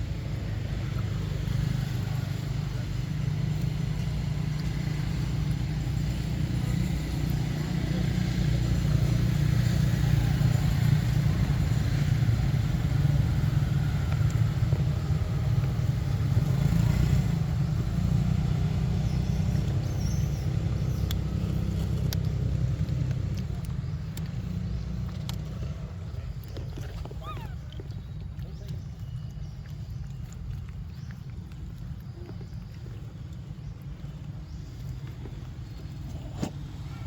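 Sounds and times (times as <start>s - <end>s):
steady low rumble: 0.0s - 16.5s.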